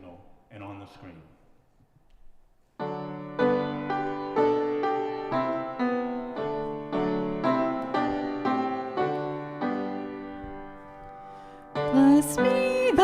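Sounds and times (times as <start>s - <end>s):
piano chords: 2.8s - 13.0s.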